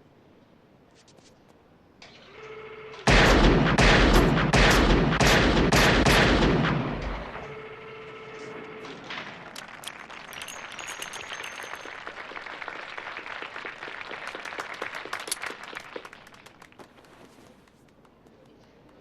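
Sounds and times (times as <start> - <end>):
spectators clapping: 9.4 - 19.0.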